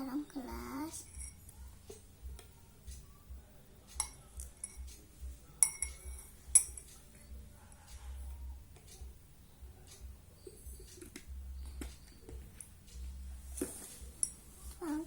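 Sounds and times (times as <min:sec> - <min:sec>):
spoon clinking against glass: 0:01.0 - 0:01.5, 0:03.9 - 0:05.0, 0:05.6 - 0:07.3, 0:14.2 - 0:14.4.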